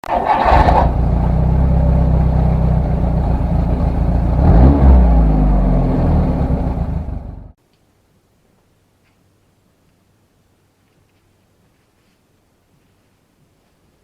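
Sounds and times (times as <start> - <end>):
car engine idling: 0.0 - 7.6
engine revving: 0.0 - 7.6.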